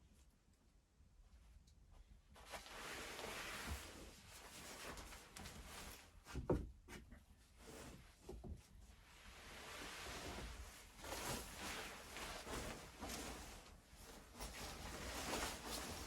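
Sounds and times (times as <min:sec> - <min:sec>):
faint rustling and handling: 0:00.0 - 0:16.0.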